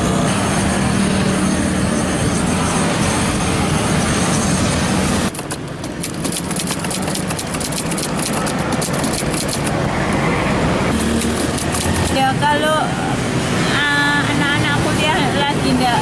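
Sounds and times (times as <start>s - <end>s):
traffic and engine noise: 0.0s - 16.0s
manual typewriter typing: 5.3s - 10.3s, 10.9s - 12.2s.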